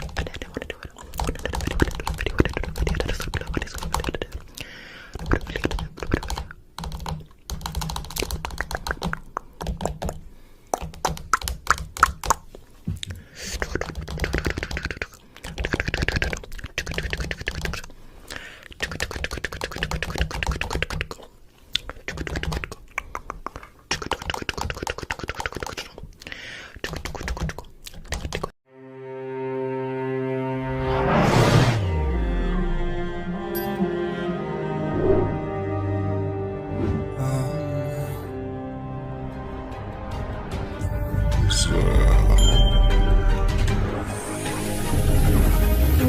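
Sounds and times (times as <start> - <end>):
rapid irregular clicking: 0.0 - 4.4, 5.1 - 12.4, 13.6 - 17.9.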